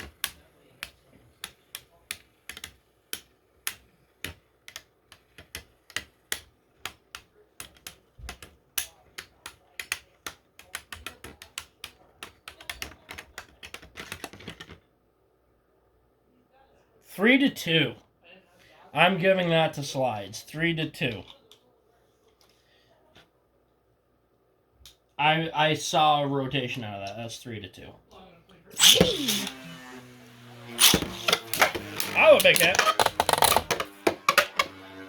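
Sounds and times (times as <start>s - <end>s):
spinning tops clicking together: 30.8s - 34.6s.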